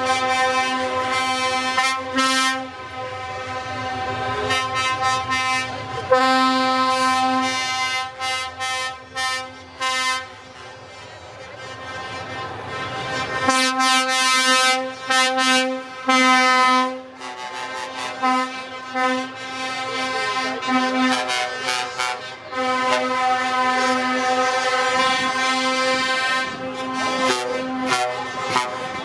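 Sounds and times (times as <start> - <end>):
truck air horn blasts: 0.0 - 29.0.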